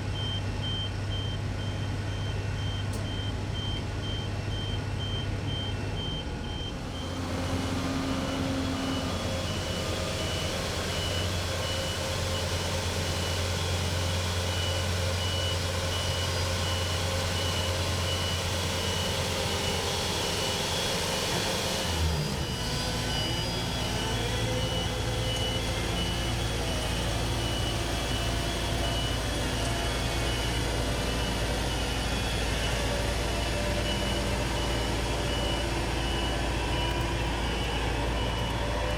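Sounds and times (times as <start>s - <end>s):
heavy engine running: 0.0s - 38.9s
backup alarm beeping: 0.2s - 19.7s.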